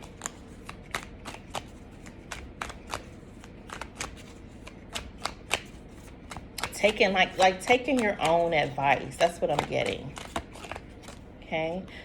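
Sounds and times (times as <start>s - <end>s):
cards being shuffled: 0.0s - 11.3s.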